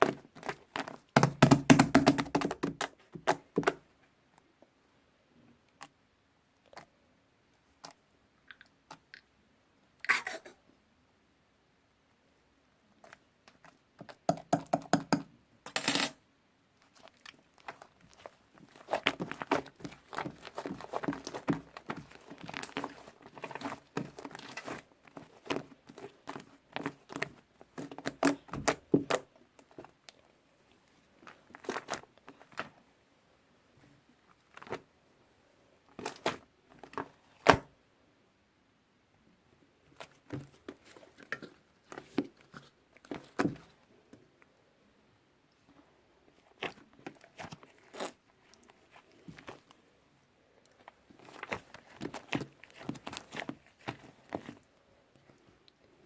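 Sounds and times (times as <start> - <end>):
clay slime squeezed by hand: 16.8 - 30.0.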